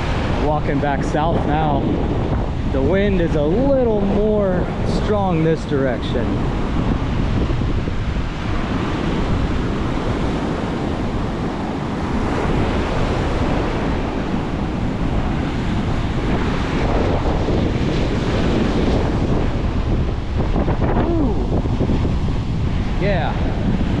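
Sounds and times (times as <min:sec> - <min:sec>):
wind buffeting microphone: 0:00.0 - 0:24.0
surf breaking on beach: 0:06.3 - 0:24.0.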